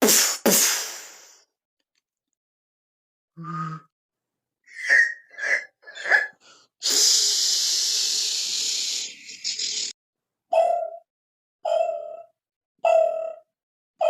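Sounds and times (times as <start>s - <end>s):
loud vocal hiss: 6.8s - 9.9s
sharp vocal bursts: 6.8s - 9.9s.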